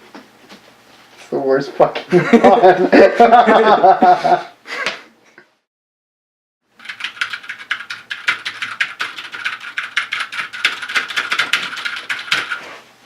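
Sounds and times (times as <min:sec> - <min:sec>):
mechanical keyboard typing: 0:06.8 - 0:12.6.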